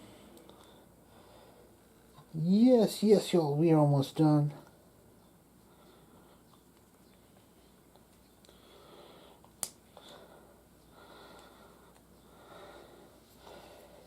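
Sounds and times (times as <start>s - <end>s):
soft breathing: 0.0s - 2.3s, 5.3s - 14.0s.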